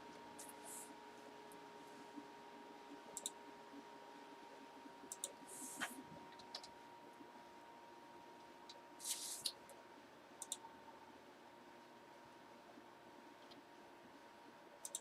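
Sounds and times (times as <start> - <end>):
faint steady hum: 0.0 - 15.0
faint clicks: 3.1 - 3.4, 5.1 - 6.8, 10.4 - 10.7, 14.8 - 15.0.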